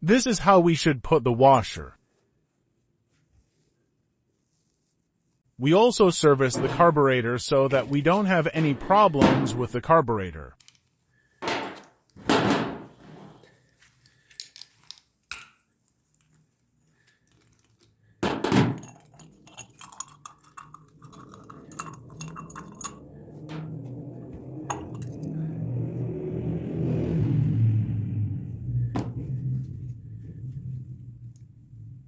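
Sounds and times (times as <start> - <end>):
low engine rumble: 6.2 - 9.8, 20.5 - 32.0
sharp knocks: 11.4 - 13.0.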